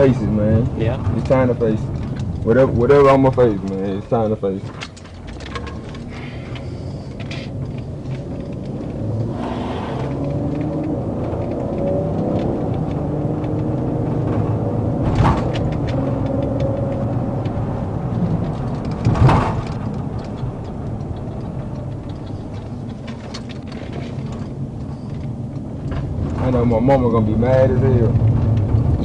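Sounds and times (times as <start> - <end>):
car engine running: 0.0 - 29.0.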